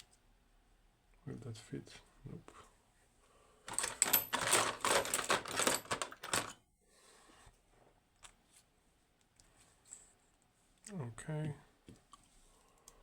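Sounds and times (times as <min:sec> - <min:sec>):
metal lock parts rattling: 0:03.7 - 0:06.6.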